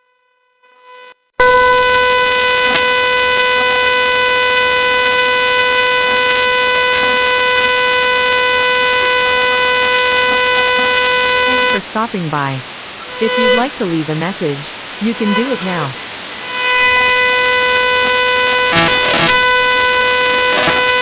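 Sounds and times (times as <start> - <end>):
steady buzzy electronic tone: 0.0 - 21.0
faint beep: 13.2 - 13.7.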